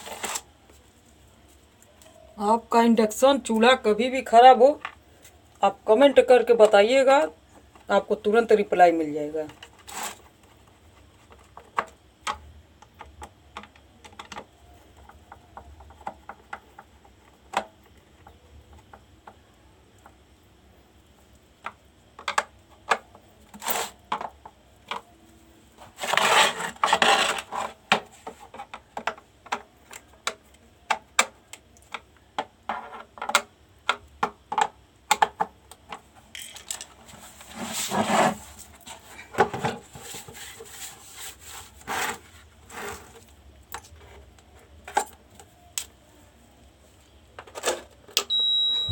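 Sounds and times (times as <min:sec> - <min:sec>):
small parts and tools clicking: 0:35.2 - 0:37.0.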